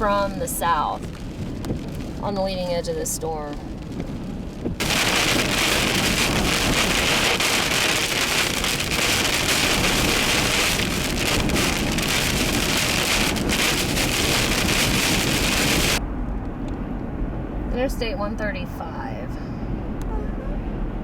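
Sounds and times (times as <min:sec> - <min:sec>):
heavy rain pelting down: 0:00.0 - 0:16.0.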